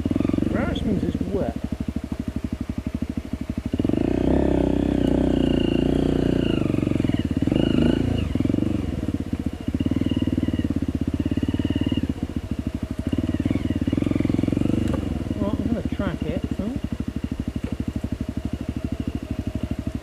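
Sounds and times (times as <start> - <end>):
motorcycle engine: 0.0 - 20.0.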